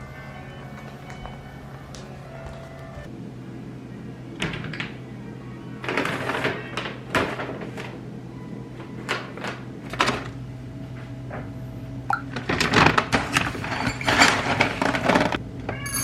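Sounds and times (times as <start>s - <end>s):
household things knocking and clattering: 12.3s - 15.8s.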